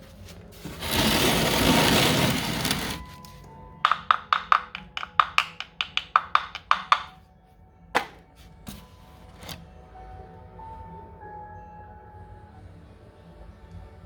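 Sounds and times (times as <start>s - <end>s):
knocking on ceramic tile: 3.8s - 7.2s.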